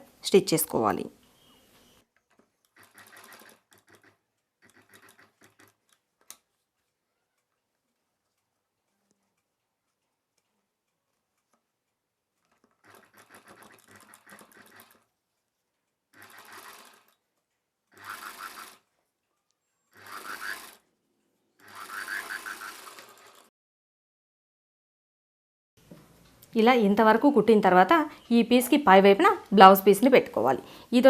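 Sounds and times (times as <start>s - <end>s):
sewing machine stitching: 2.3s - 6.4s, 12.4s - 15.1s, 16.1s - 17.2s, 17.9s - 18.9s, 19.9s - 20.8s, 21.6s - 23.5s.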